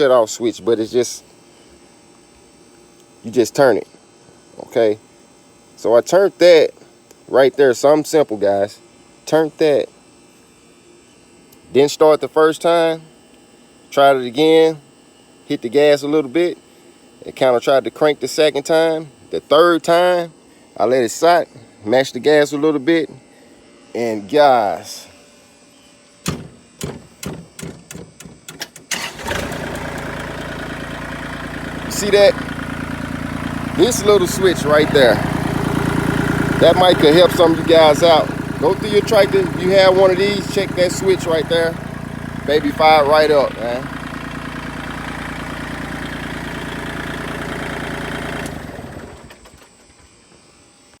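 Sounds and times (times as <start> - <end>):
diesel engine cranking and idling: 28.5 - 50.0.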